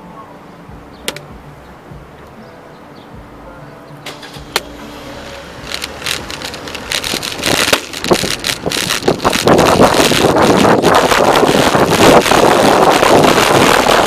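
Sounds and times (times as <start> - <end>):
wind on microphone: 5.4 - 14.0
bicycle rattling: 5.5 - 14.0.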